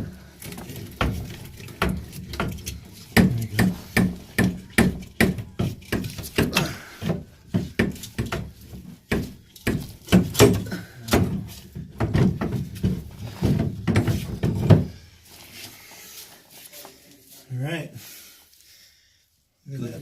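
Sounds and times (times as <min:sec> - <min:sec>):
dull knocks: 0:00.9 - 0:15.0.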